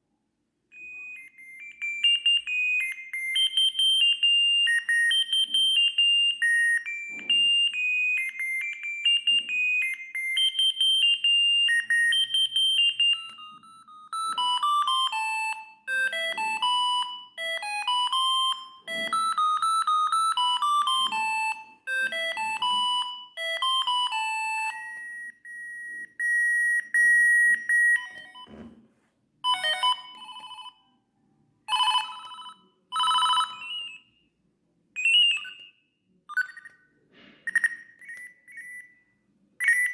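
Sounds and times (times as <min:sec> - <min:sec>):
mobile phone ringtone melodies: 0:00.7 - 0:28.8, 0:29.4 - 0:31.0, 0:31.7 - 0:34.3, 0:35.0 - 0:39.9.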